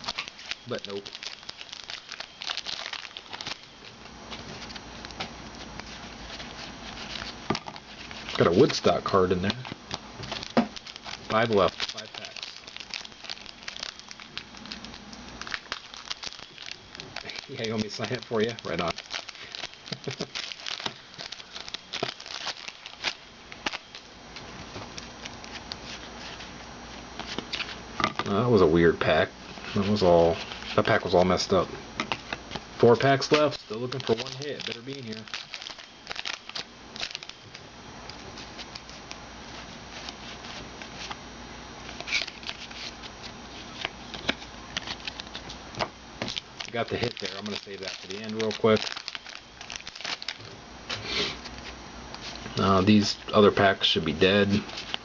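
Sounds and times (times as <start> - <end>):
cards being handled: 0.0 - 26.5, 32.0 - 37.4, 41.9 - 52.7
plastic wrapper crinkling: 0.0 - 26.6, 27.2 - 28.4, 29.5 - 41.2, 41.8 - 50.5, 51.4 - 55.0.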